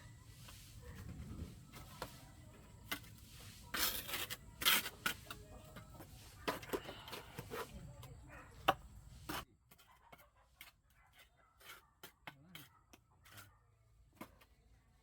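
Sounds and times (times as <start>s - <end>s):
objects being handled: 0.0s - 9.8s.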